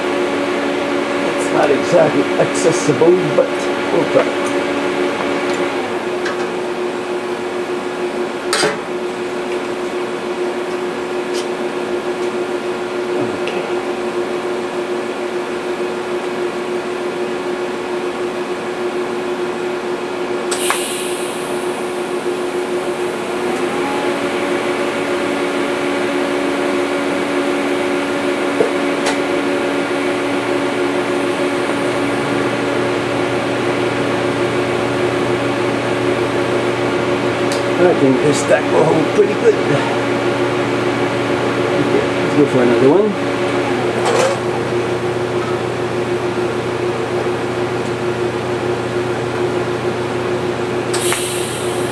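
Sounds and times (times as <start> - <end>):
welder hum and hiss: 20.5 - 28.4, 50.9 - 51.9.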